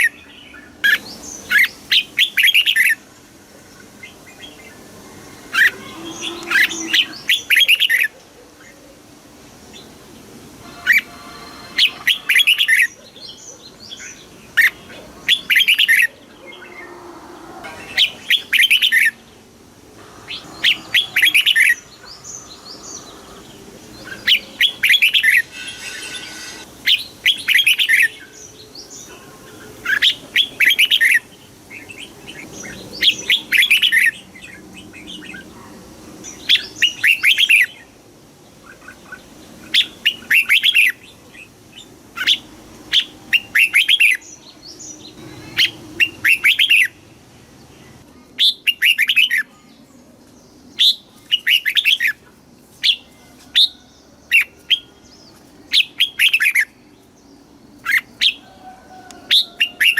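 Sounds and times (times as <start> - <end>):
bird singing: 3.8 - 8.1, 10.6 - 19.4, 20.0 - 35.6, 41.8 - 47.0, 52.8 - 59.9.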